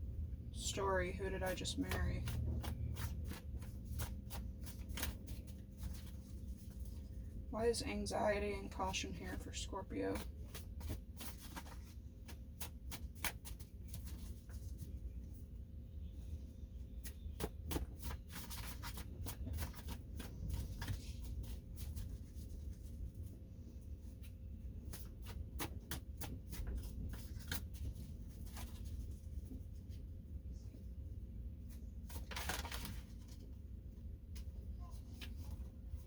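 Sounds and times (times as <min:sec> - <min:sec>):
faint steady hum: 0:00.0 - 0:36.0
cards clicking and rustling: 0:01.5 - 0:07.0, 0:10.1 - 0:14.6, 0:17.0 - 0:22.2, 0:24.8 - 0:29.1, 0:32.0 - 0:33.5.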